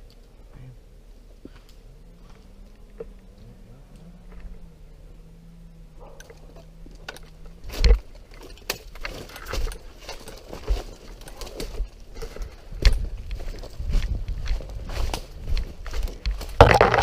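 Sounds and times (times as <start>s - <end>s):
low steady hum: 0.0s - 17.0s
rustling: 1.2s - 17.0s
footsteps: 6.0s - 17.0s.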